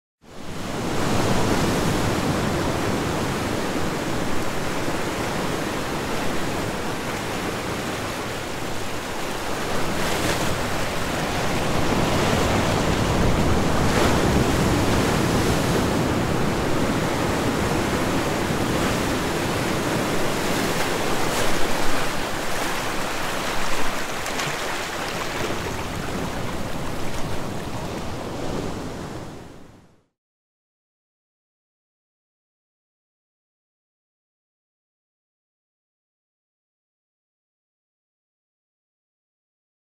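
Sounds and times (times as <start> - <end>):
ocean waves breaking on shore: 0.3 - 30.0.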